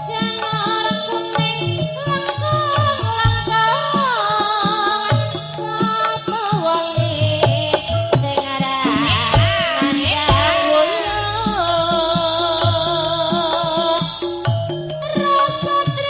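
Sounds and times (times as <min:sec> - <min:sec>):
hand drum beat: 0:00.0 - 0:16.0
ensemble accompaniment: 0:09.4 - 0:15.3.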